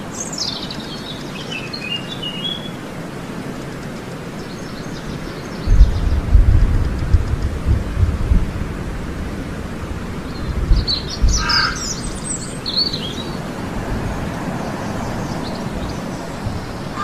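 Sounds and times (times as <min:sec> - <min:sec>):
birds calling: 0:00.0 - 0:17.0
low background rumble: 0:05.6 - 0:16.8.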